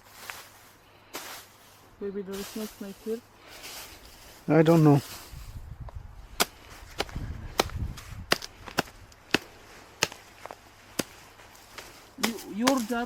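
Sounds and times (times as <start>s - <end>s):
blade chopping wood: 6.4s - 13.0s.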